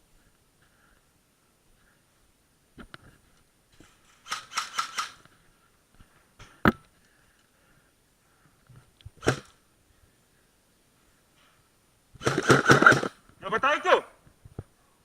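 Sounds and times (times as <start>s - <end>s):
airsoft guns firing pops: 9.2s - 9.5s, 12.2s - 13.2s.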